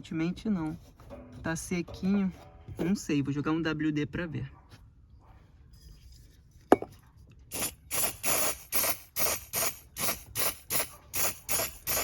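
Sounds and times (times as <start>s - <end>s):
aerosol can spraying squirts: 7.5s - 12.0s.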